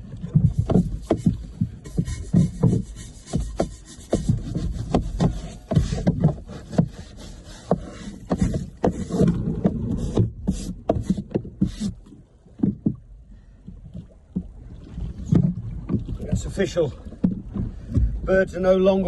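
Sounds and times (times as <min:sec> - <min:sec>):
scrubbing and scraping on deck: 0:00.2 - 0:13.0
hissy brush strokes: 0:01.0 - 0:09.3.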